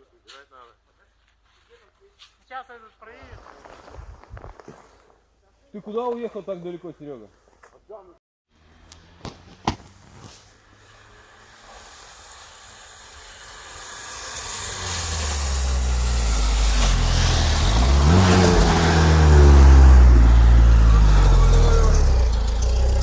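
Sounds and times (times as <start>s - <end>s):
tyres hissing through snow: 9.9s - 23.0s
car engine revving: 13.8s - 23.0s.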